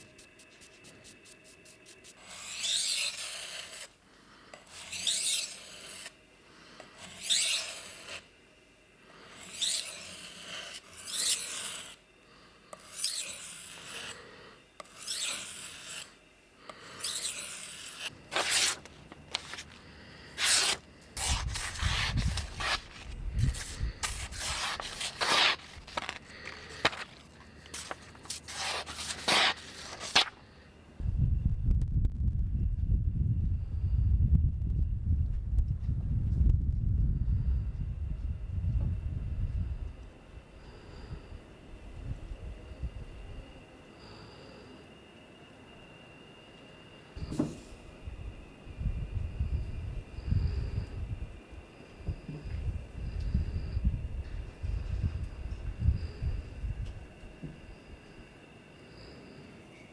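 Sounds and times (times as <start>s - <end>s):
rubbing strokes: 0.0s - 3.9s, 17.0s - 19.8s, 20.4s - 30.3s
low rumble: 31.0s - 40.0s.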